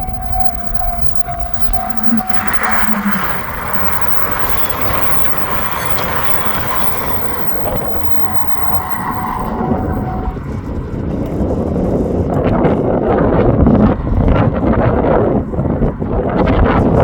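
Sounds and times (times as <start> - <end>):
faint steady tone: 0.0 - 10.8
train wheels rushing on rail: 0.0 - 14.1.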